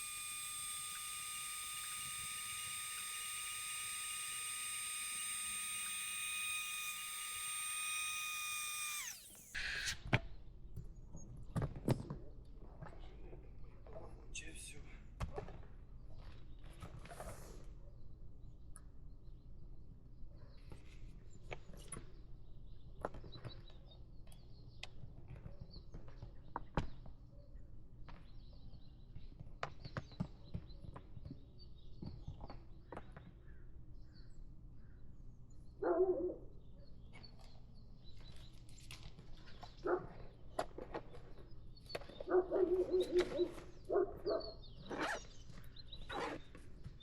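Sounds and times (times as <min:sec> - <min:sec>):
dog barking: 0:35.8 - 0:36.4, 0:39.8 - 0:40.1, 0:42.3 - 0:44.6.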